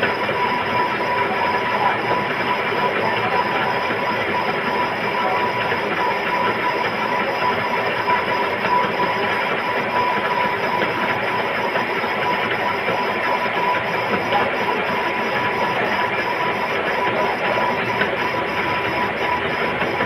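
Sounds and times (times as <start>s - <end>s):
metal lathe running: 0.0s - 20.0s
thin steady whine: 0.0s - 20.0s.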